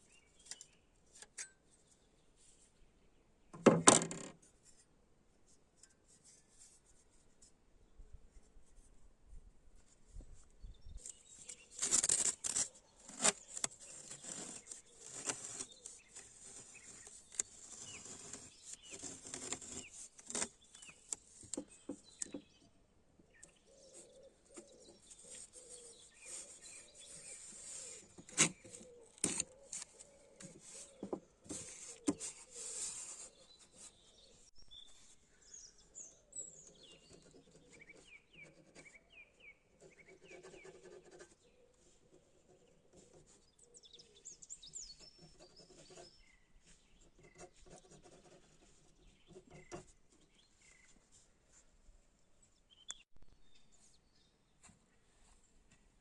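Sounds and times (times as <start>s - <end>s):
birds chirping faintly: 0.0s - 3.8s, 9.8s - 56.0s
scratching: 11.0s - 22.5s.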